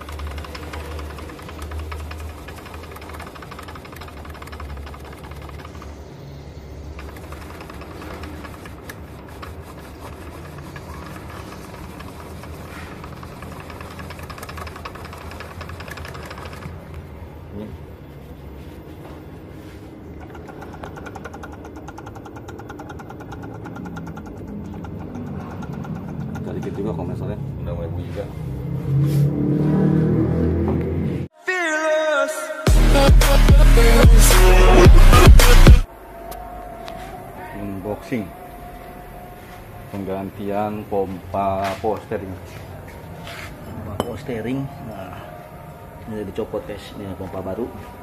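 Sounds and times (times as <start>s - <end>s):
power steering pump growl: 0.0s - 6.1s, 6.9s - 16.9s, 20.0s - 27.3s.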